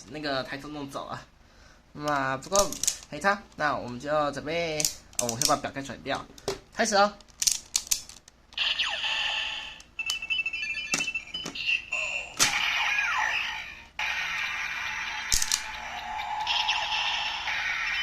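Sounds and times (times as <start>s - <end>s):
electronic beeps: 10.0s - 12.3s
toy belt looping standby tune: 14.4s - 18.0s.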